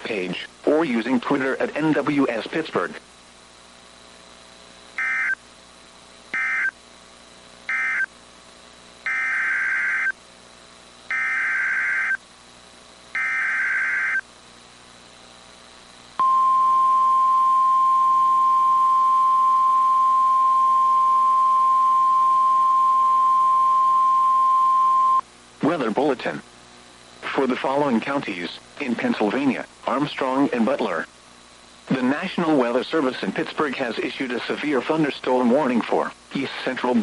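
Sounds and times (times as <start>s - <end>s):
buzzy digital tone bursts: 5.0s - 5.4s, 7.7s - 8.1s, 9.0s - 10.2s, 11.1s - 12.2s, 13.1s - 14.2s
steady single-pitch alarm tone: 5.0s - 5.4s, 6.3s - 6.8s, 7.7s - 8.1s, 9.0s - 10.2s, 11.1s - 12.2s, 13.1s - 14.2s, 16.2s - 25.2s.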